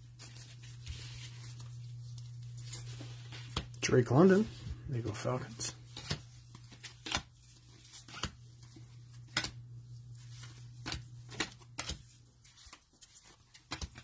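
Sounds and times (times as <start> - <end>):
steady low hum: 0.0 - 12.9
cards clicking and snapping: 6.0 - 7.3, 9.2 - 9.6, 10.8 - 12.8, 13.5 - 14.0.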